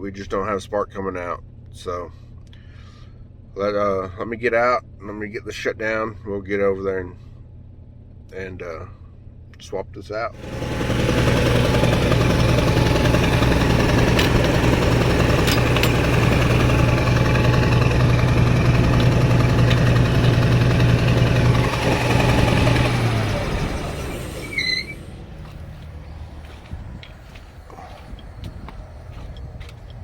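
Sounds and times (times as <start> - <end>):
misfiring engine running: 10.4 - 30.0.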